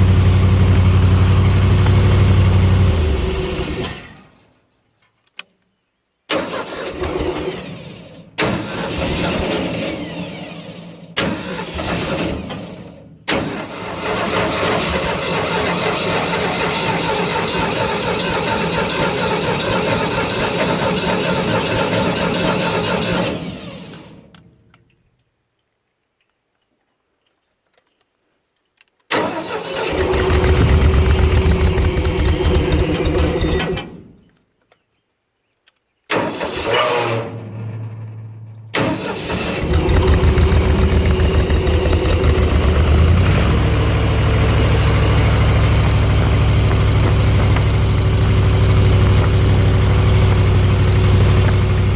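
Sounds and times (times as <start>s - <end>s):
air compressor engine running: 7.0s - 24.2s, 29.7s - 34.1s, 38.7s - 51.9s.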